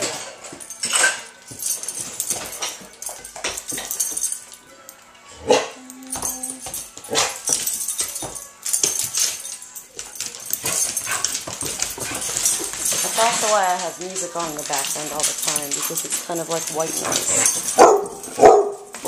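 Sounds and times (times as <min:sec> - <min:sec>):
background music: 0:00.0 - 0:19.0
dogs scuffling: 0:00.0 - 0:19.0
dog barking: 0:05.4 - 0:05.8, 0:17.8 - 0:18.9.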